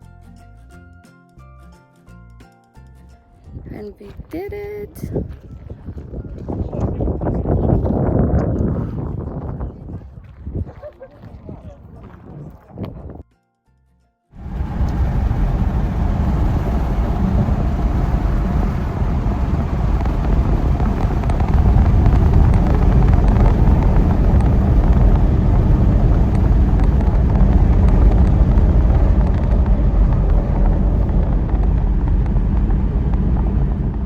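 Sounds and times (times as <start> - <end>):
car driving rumble and hiss: 14.4 - 34.0.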